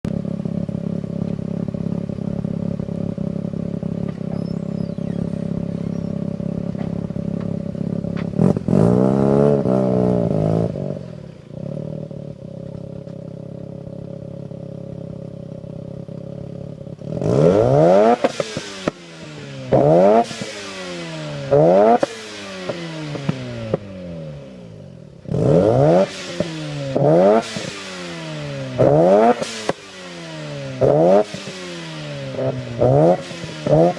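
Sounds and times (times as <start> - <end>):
rotary engine idling and revving: 0.1 - 33.9
sharp throttle blips: 4.1 - 7.0.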